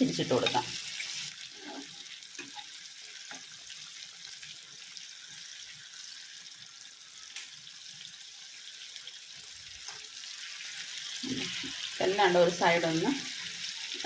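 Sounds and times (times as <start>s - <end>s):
battered fruit deep-frying: 0.0s - 14.0s.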